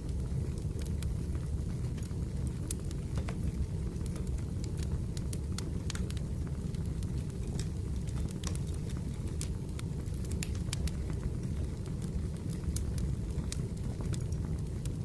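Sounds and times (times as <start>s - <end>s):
low rumble of flames: 0.0s - 15.0s
wood fire crackling and popping: 0.0s - 15.0s.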